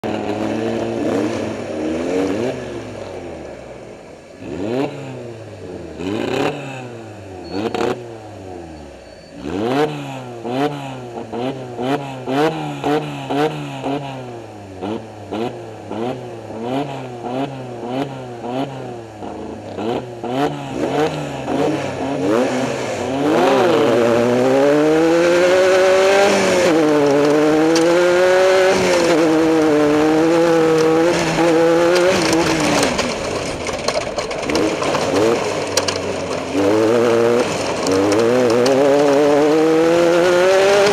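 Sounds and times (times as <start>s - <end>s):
engine revving: 0.0s - 3.7s, 4.4s - 40.9s
knocks and clatter: 25.4s - 40.9s.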